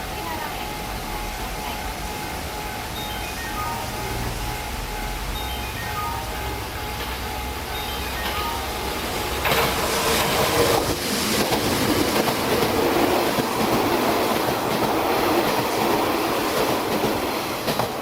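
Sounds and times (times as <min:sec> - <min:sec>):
electric train passing: 0:00.0 - 0:18.0
wheels clattering over rail joints: 0:08.9 - 0:18.0.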